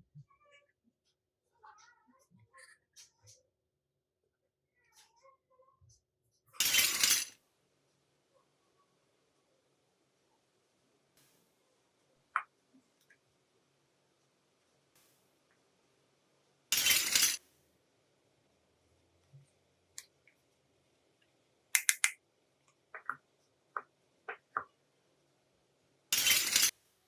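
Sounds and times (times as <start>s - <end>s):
toy pieces clicking and clinking: 6.6s - 7.4s, 16.8s - 17.4s, 21.8s - 22.2s, 26.2s - 26.7s.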